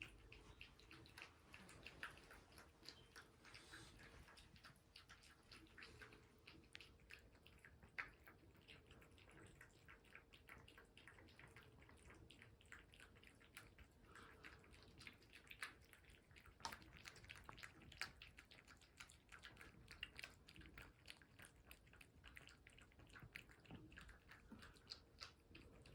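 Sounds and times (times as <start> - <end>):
cats licking and chewing: 0.0 - 25.9
faint steady hum: 0.0 - 25.9.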